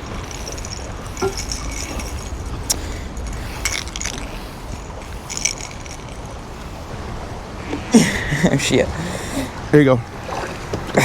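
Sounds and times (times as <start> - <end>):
metallic clinks and jingles: 0.0 - 6.4
steady low rumble: 0.0 - 10.3.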